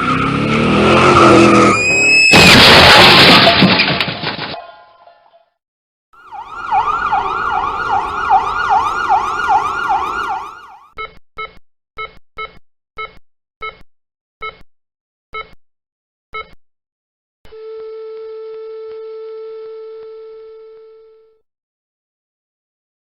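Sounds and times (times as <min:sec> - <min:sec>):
emergency siren yelping: 0:01.2 - 0:02.3, 0:06.2 - 0:10.9.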